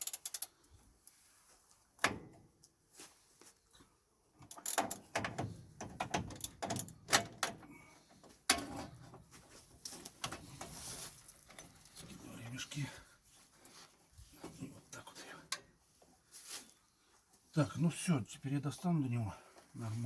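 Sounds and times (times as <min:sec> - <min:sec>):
wrench and engine parts clanking: 0:04.5 - 0:07.7.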